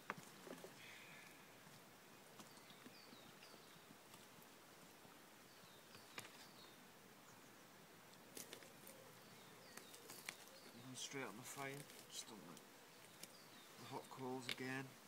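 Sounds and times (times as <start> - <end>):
small bird chirping: 8.4 - 14.8.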